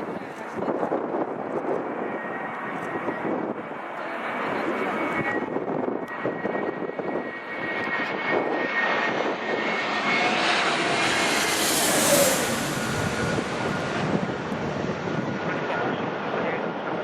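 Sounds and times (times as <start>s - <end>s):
jet airliner passing overhead: 0.0s - 17.0s
thin jet whine: 4.5s - 16.1s.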